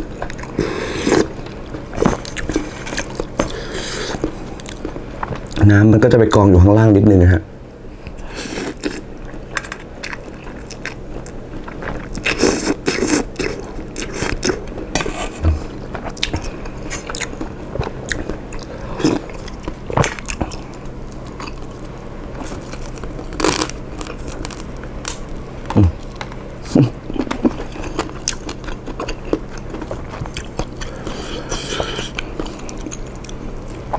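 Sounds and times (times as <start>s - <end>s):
chewing and wet mouth noises: 8.1s - 33.9s.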